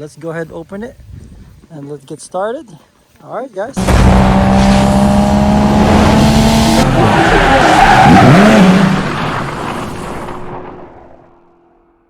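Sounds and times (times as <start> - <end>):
racing car engine: 3.8 - 11.4
tyre squeal: 6.8 - 10.1.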